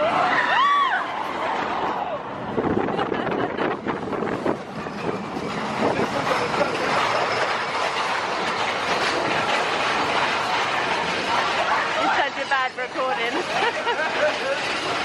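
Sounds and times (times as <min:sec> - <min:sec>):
roller coaster rattling on rails: 0:00.0 - 0:15.0.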